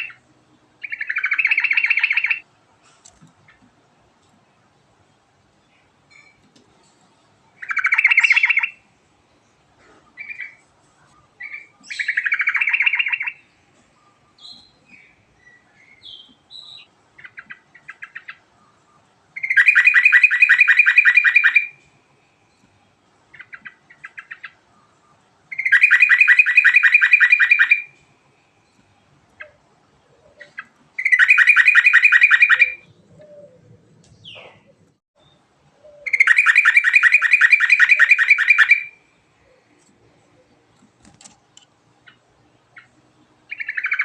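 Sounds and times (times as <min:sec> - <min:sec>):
bird singing fast rolling trills: 0:00.0 - 0:02.4, 0:07.5 - 0:10.6, 0:11.2 - 0:21.8, 0:22.4 - 0:27.9, 0:28.5 - 0:39.8, 0:42.0 - 0:44.0.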